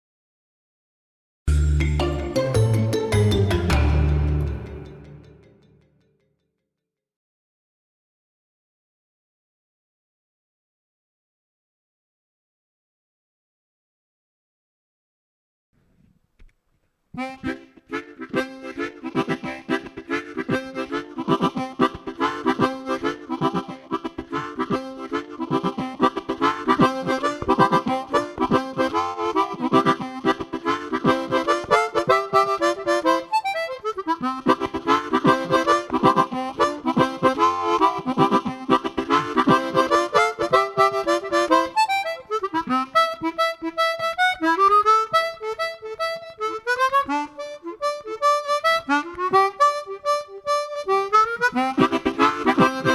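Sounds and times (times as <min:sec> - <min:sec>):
chromatic harmonica playing: 0:01.5 - 0:05.4, 0:17.2 - 0:52.9.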